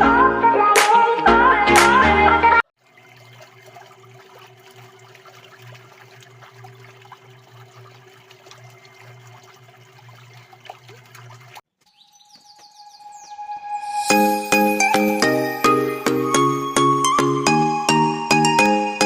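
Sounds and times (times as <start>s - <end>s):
water trickling and splashing: 2.8s - 12.7s.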